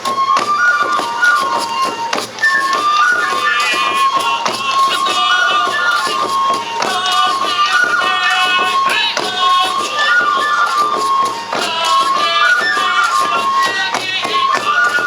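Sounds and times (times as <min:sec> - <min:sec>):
bamboo flute melody: 0:00.0 - 0:15.0
drum beats: 0:00.0 - 0:15.0.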